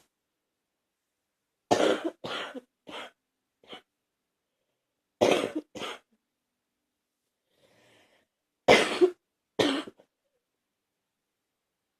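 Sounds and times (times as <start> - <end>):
person coughing: 1.7 - 3.9, 5.2 - 6.1, 8.7 - 10.1
faint breath: 7.4 - 8.4.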